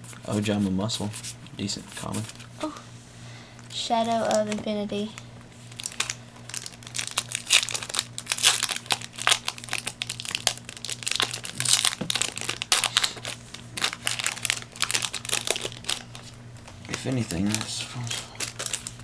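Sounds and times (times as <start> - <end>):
foil wrapper crinkling: 4.0 - 19.0.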